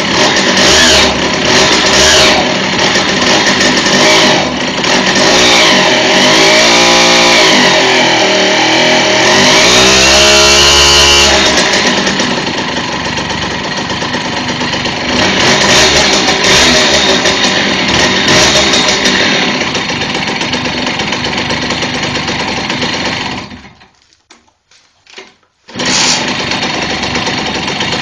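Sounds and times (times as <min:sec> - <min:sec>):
moped engine revving: 0:00.0 - 0:24.0, 0:25.7 - 0:28.0
high squeal from clutch: 0:25.7 - 0:26.4.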